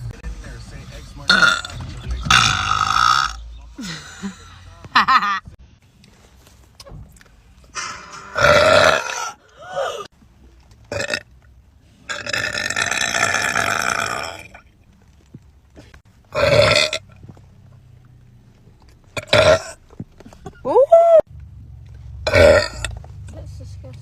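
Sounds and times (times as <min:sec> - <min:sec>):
person belching loudly: 0:01.3 - 0:01.7, 0:02.3 - 0:03.4, 0:08.4 - 0:10.1, 0:10.9 - 0:11.2, 0:12.1 - 0:14.6, 0:16.3 - 0:17.0, 0:19.2 - 0:19.8, 0:22.2 - 0:22.9.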